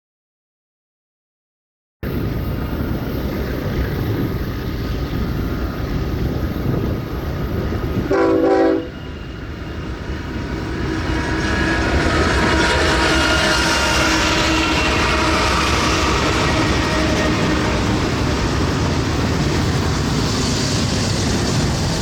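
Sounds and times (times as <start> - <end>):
diesel locomotives rumbling: 2.0 - 22.0
locomotive air horn blast: 8.1 - 9.1.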